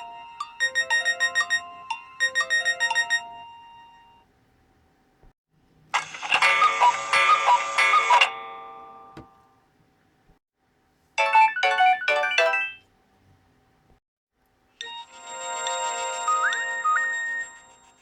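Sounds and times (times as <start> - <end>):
mobile phone ringtones: 0.0 - 4.2, 11.2 - 12.8, 14.8 - 18.0.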